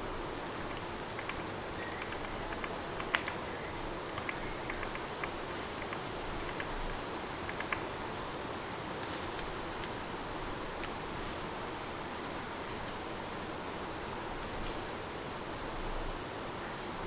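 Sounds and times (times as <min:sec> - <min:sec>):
steady rain: 0:00.0 - 0:17.0
light ticks: 0:00.7 - 0:03.4, 0:04.1 - 0:08.0, 0:08.9 - 0:10.0, 0:10.8 - 0:11.0.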